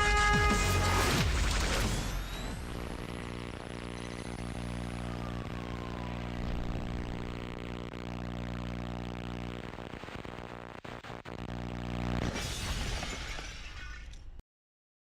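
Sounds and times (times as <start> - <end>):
steady pitched drone: 1.1 - 8.0.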